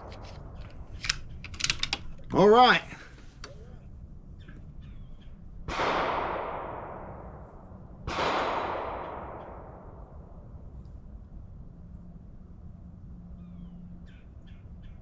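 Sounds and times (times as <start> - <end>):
rifle shots: 5.7 - 7.4, 8.0 - 10.1.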